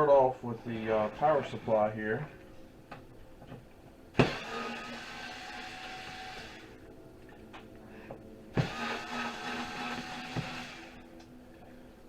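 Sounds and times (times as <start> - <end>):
power driver motor whine: 4.2 - 6.8, 8.5 - 11.3.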